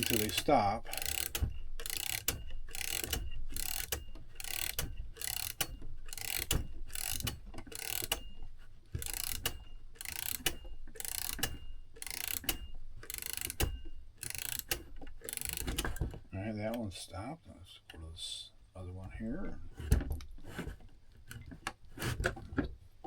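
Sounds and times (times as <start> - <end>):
clock key winding ratchet clicks: 0.0 - 8.3, 9.0 - 15.9.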